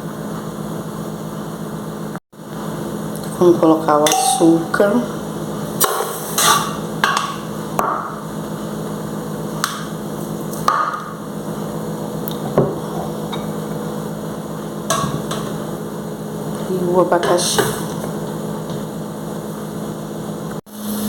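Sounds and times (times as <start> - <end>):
utensils clinking on cooking pan: 4.1 - 4.7.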